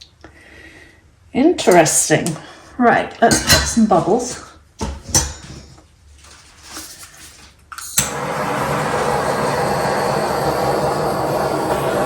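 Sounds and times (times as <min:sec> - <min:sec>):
hot-air blower running: 0:08.0 - 0:12.0.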